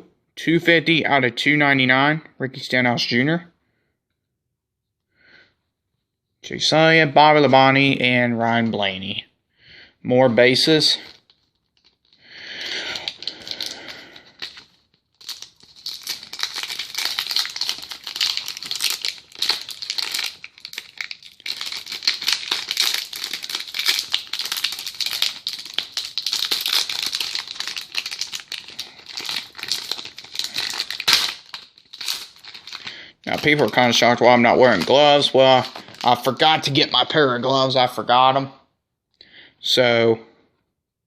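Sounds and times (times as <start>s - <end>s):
card wrapper tearing and crinkling: 11.0s - 36.7s.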